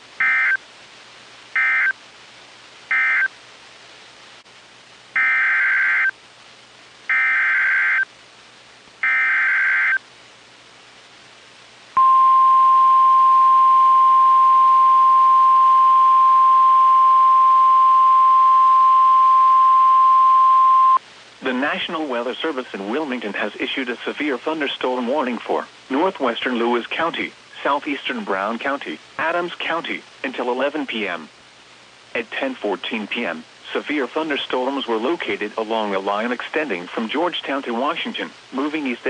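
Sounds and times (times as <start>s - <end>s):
steady warning alarm tone: 0.2s - 0.6s, 1.6s - 1.9s, 2.9s - 3.3s, 5.2s - 6.1s, 7.1s - 8.0s, 9.0s - 10.0s
raspy data bursts: 1.5s - 2.0s, 2.9s - 3.4s, 5.2s - 6.2s.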